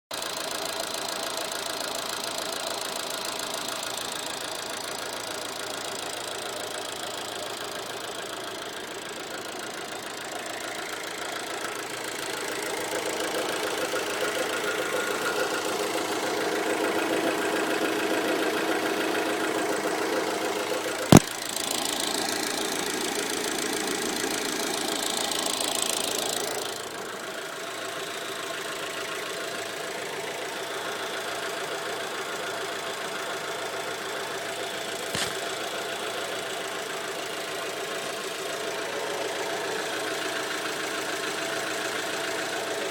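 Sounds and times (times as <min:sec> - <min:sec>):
car engine running: 0:00.2 - 0:42.9
sharp click: 0:21.1 - 0:21.3.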